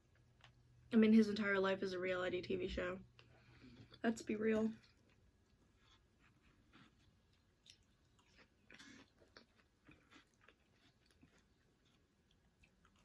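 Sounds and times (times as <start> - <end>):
person chewing food: 4.8 - 13.0.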